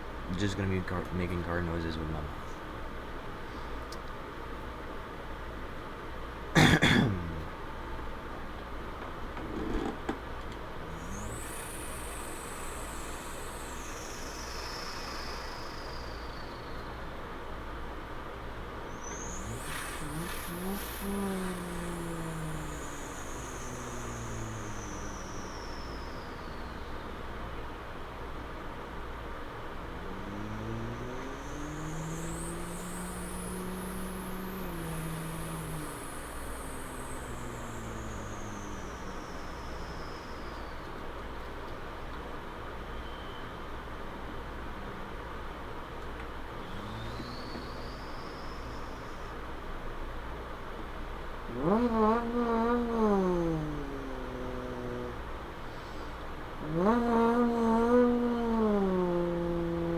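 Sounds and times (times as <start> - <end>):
person imitating car engine: 6.6 - 7.6, 19.2 - 25.4, 29.8 - 39.2, 51.5 - 55.4, 56.6 - 59.9
steady hiss: 10.4 - 17.6, 18.6 - 59.9.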